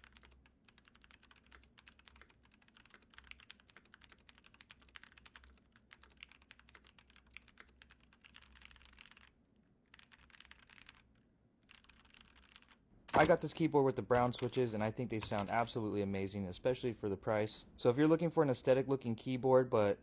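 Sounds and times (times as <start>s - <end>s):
mechanical keyboard typing: 0.0s - 13.5s.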